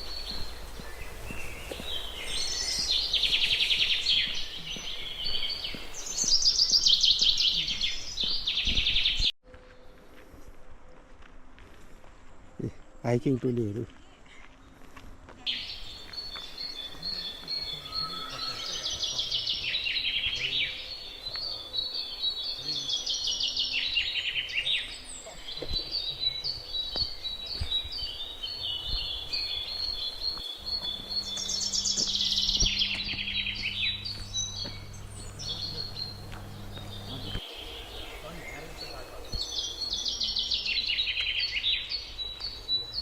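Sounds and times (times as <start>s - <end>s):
songbird trilling: 15.5s - 43.0s.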